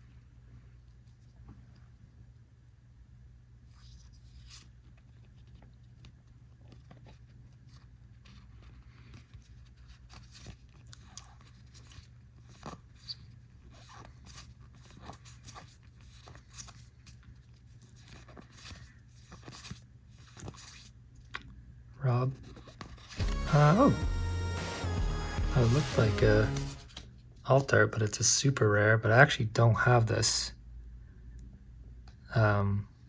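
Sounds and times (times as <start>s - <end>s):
trading cards sliding and flipping: 6.6s - 21.0s, 22.3s - 23.9s, 24.6s - 27.7s.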